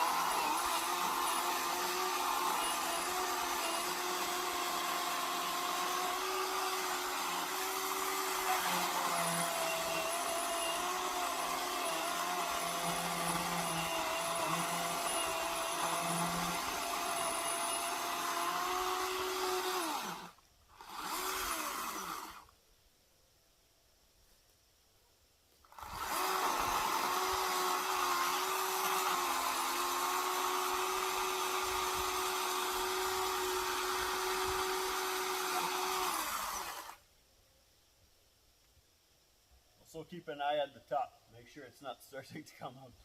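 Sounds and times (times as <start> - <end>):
electric chainsaw whining: 0.0 - 22.5, 25.7 - 37.0.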